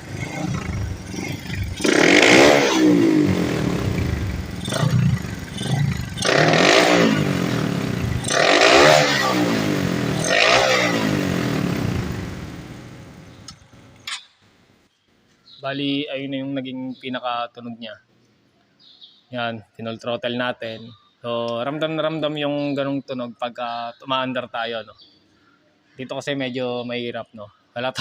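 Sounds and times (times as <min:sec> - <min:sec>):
motorcycle engine revving: 0:00.0 - 0:13.6.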